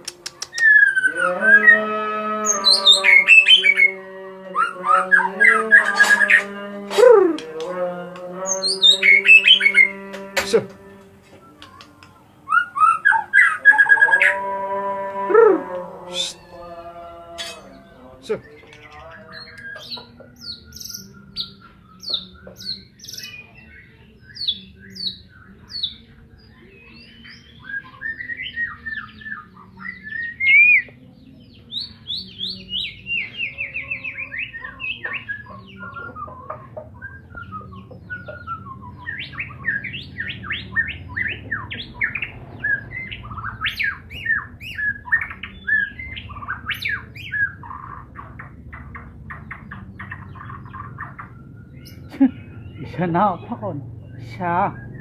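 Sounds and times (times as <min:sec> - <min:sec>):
songbird singing chirps and whistles: 0:00.0 - 0:55.0.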